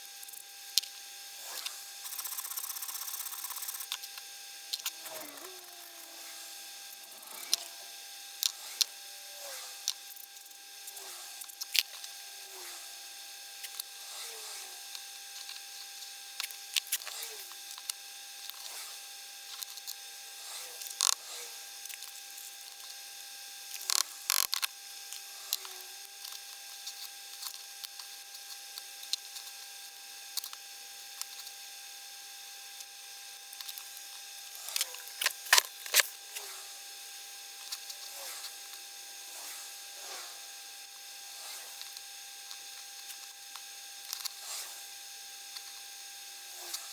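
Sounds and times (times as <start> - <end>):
sharp metallic clicks: 34.6 - 36.1.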